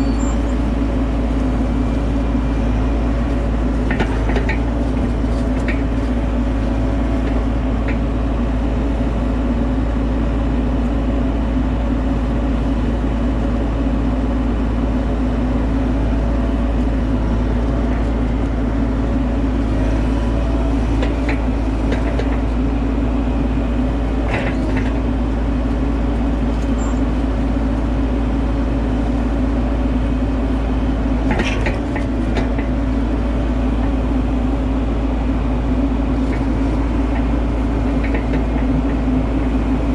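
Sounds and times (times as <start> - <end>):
diesel excavator engine running: 0.0 - 39.9.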